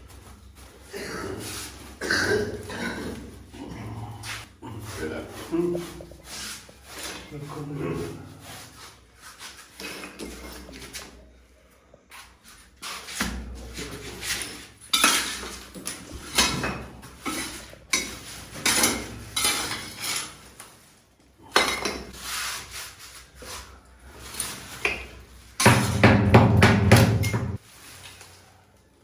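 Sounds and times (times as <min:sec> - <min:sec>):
hard objects scraping and clinking: 0:13.8 - 0:20.8.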